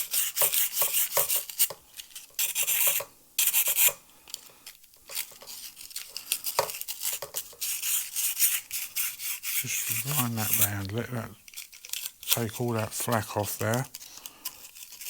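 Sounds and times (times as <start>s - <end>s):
abrasive paper rubbing scratchily: 5.5s - 13.8s.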